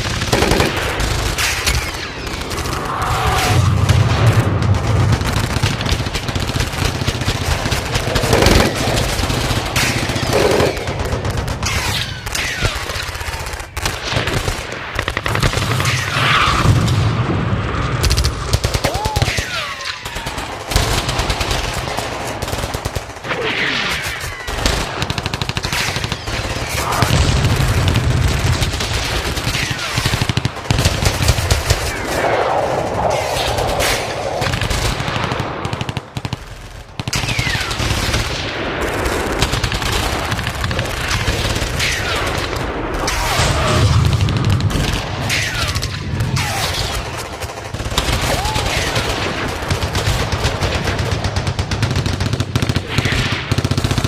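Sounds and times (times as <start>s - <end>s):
rapid gunfire: 0.0s - 17.2s, 17.8s - 54.0s
heavy low rumble: 2.4s - 6.0s.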